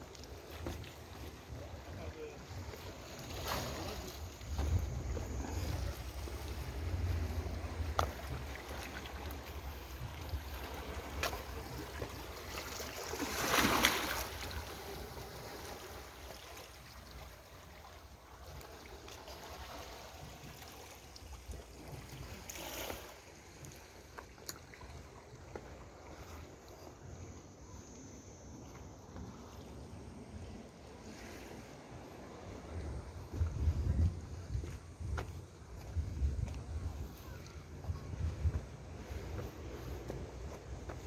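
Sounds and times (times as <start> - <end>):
sea waves splashing: 0.0 - 27.2, 28.6 - 41.0
wind on microphone: 31.0 - 41.0.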